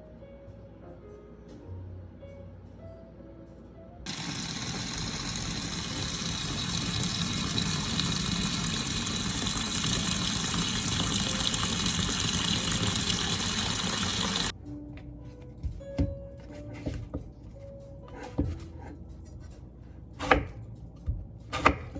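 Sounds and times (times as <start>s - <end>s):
water running from kitchen tap: 4.1s - 14.6s.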